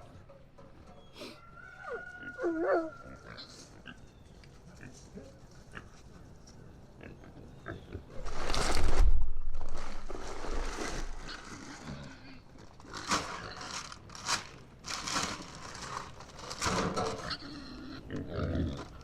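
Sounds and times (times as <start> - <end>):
pigs grunting and squealing: 1.2 - 6.1, 7.0 - 8.6, 9.8 - 13.9, 16.6 - 19.0
crunching and scraping: 7.9 - 19.0.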